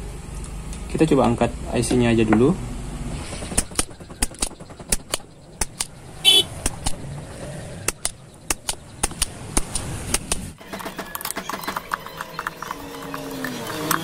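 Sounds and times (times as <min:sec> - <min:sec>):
tools clicking against circuit board: 0:03.6 - 0:06.0, 0:07.8 - 0:10.5.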